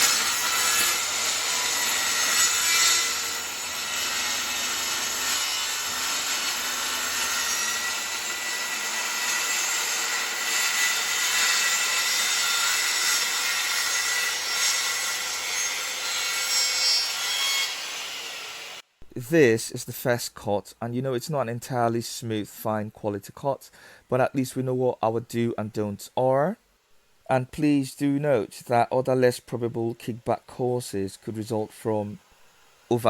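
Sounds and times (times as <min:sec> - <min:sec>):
circular saw cutting wood: 0:00.0 - 0:18.8.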